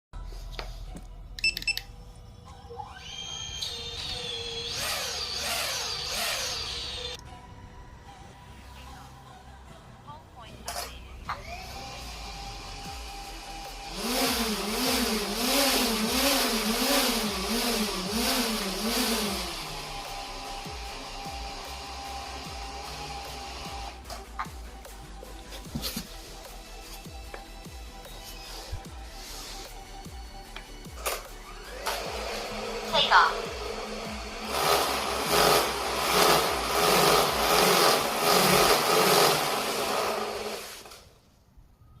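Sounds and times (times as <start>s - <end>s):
drone propellers whirring: 3.1s - 7.2s, 11.4s - 24.0s, 31.3s - 40.9s
drone propellers humming: 31.5s - 40.6s.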